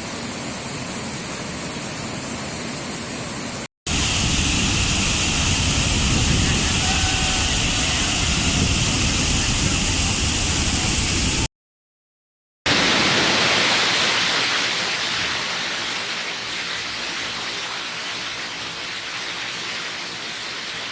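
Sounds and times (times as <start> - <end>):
waterfall rushing: 3.9 - 11.4, 12.7 - 16.5.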